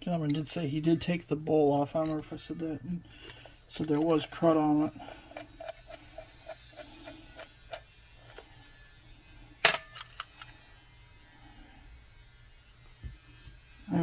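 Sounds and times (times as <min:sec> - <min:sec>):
small parts and tools clicking: 0:01.9 - 0:08.9, 0:09.6 - 0:10.7.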